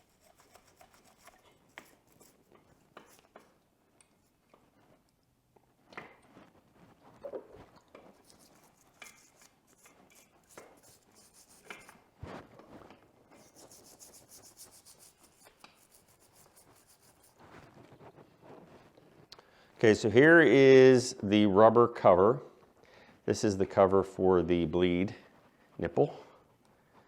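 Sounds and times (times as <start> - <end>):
stiff brush scrubbing: 0.0 - 3.6, 7.9 - 12.0, 13.4 - 18.0.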